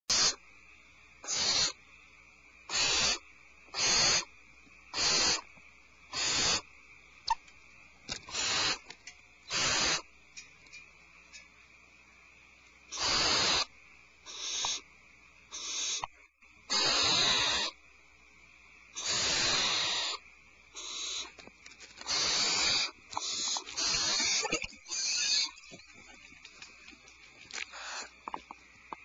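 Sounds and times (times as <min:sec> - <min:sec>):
owl hissing calls: 0:00.1 - 0:00.4, 0:01.2 - 0:01.8, 0:02.6 - 0:06.7, 0:08.2 - 0:08.9, 0:09.5 - 0:10.1, 0:12.9 - 0:14.9, 0:15.5 - 0:17.8, 0:18.9 - 0:26.4, 0:27.5 - 0:28.6.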